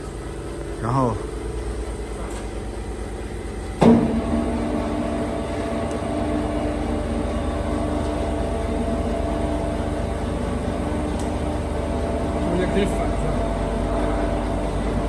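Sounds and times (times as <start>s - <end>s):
mixer motor humming: 0.0s - 15.0s
mixer motor switching on: 3.5s - 15.0s.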